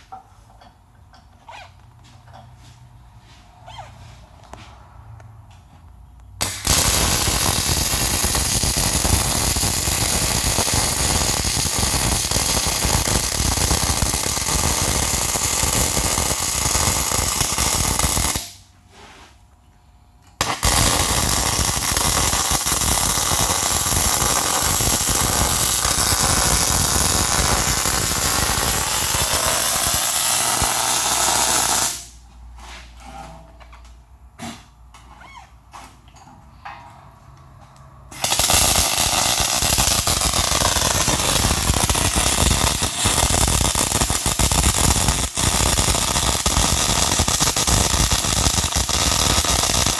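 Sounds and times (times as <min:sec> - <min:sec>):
welding arc crackling: 0:06.4 - 0:18.6, 0:20.4 - 0:32.2, 0:38.1 - 0:49.9.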